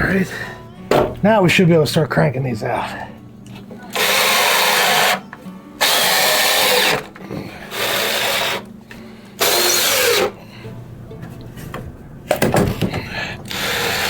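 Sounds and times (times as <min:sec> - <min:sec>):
power drill driving screws into wood: 0:03.9 - 0:05.2, 0:05.8 - 0:07.1, 0:07.7 - 0:08.7, 0:09.4 - 0:10.4, 0:13.5 - 0:14.0.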